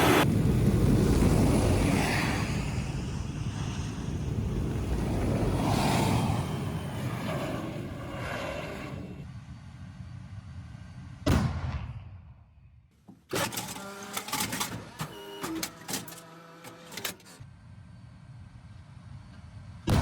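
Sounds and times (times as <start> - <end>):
low engine rumble: 0.2 - 12.1, 16.1 - 20.0
tank gun blast: 11.2 - 12.4
mechanical whirring and clanking: 13.0 - 17.4.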